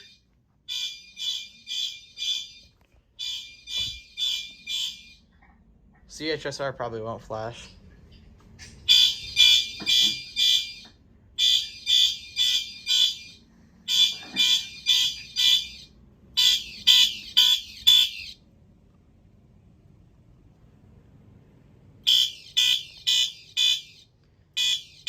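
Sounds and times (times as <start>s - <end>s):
fire alarm horn blasts: 0.0s - 5.3s, 8.8s - 18.4s, 22.0s - 25.0s.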